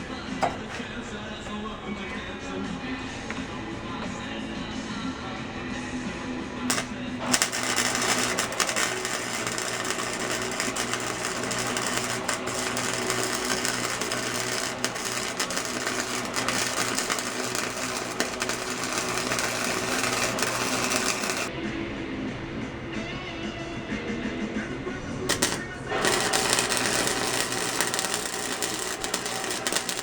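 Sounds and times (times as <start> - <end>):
welder arc crackling: 0.4 - 2.3, 6.7 - 21.5, 25.3 - 30.0.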